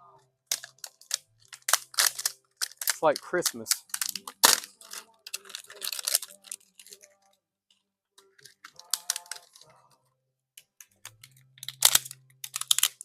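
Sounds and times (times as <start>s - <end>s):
packaging crinkling: 0.5s - 7.2s, 8.4s - 9.7s, 11.1s - 13.0s.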